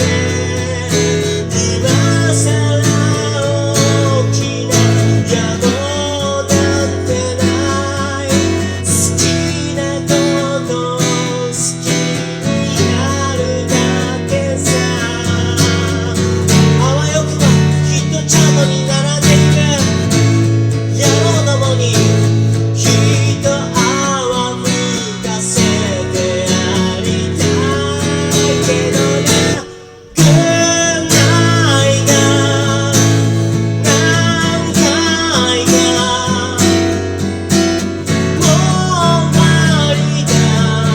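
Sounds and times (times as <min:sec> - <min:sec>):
person singing: 0:00.0 - 0:40.9
strummed acoustic guitar: 0:00.0 - 0:40.9.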